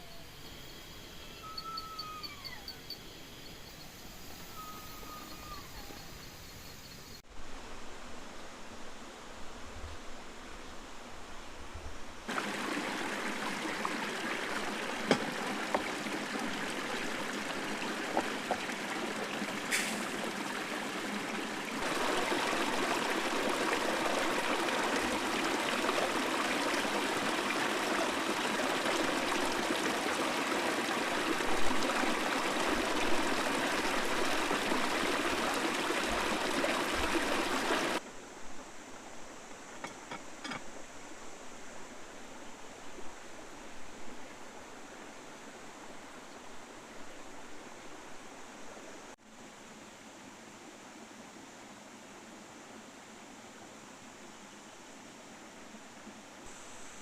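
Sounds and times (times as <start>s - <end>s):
water rushing: 12.2s - 38.0s.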